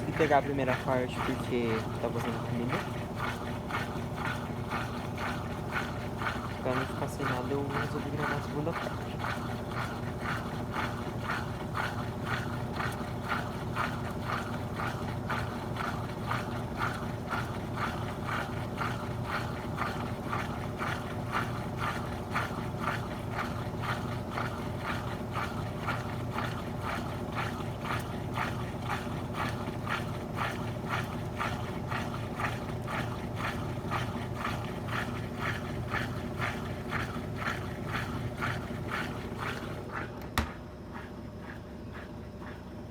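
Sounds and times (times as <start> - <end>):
washing machine spinning: 0.0 - 42.9.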